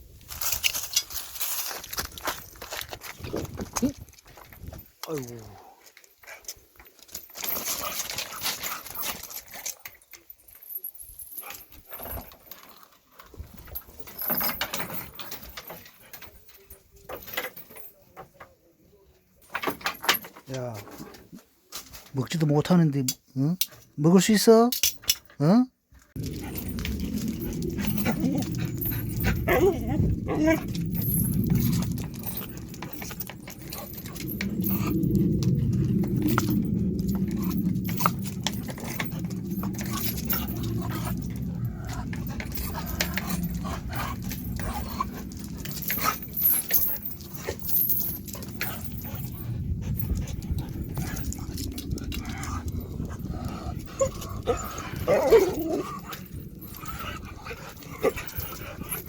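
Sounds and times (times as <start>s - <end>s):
clicks and rustles: 0.1s - 18.7s, 26.0s - 59.0s
dog vocalising low: 26.2s - 46.4s, 47.6s - 59.0s
dog whining: 26.5s - 34.0s, 54.0s - 56.1s.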